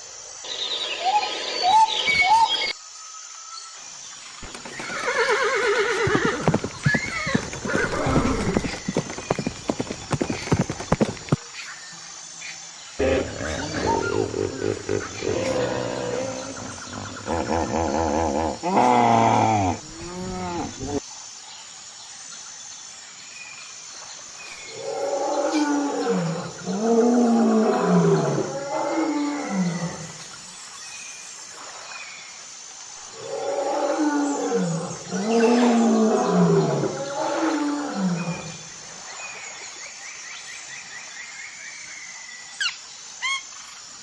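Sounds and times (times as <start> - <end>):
hooves clopping: 4.4 - 11.6
horse whinnying: 4.7 - 8.8
large animal low calls: 13.0 - 21.0.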